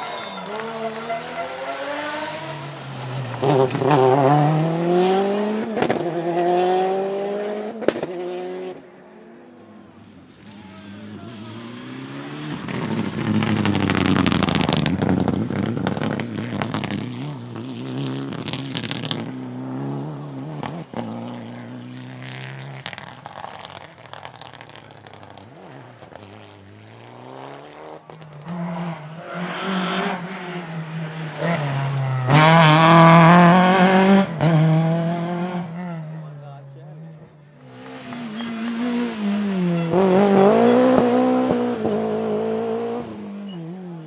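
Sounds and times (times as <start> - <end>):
rally car engines revving past: 0.0 - 44.0
exhaust cracks and pops: 12.7 - 17.2, 22.3 - 26.3.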